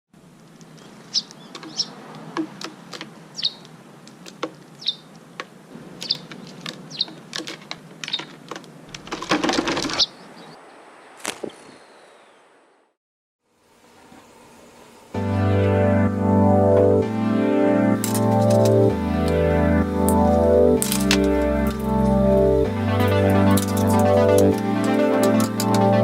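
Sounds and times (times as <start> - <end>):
small birds chirping: 0.2 - 8.9, 9.8 - 12.6
sharp clicks and taps: 0.6 - 9.1.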